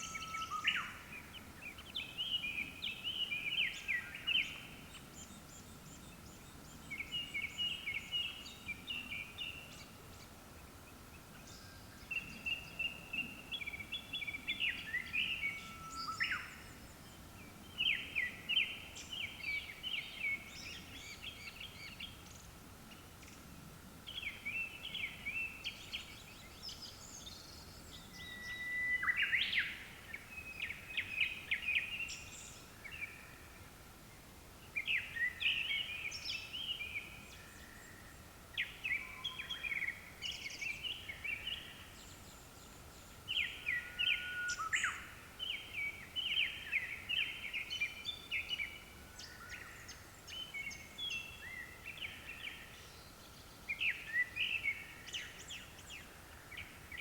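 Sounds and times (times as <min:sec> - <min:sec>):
faint steady high tone: 0:00.0 - 0:01.0, 0:15.3 - 0:16.8.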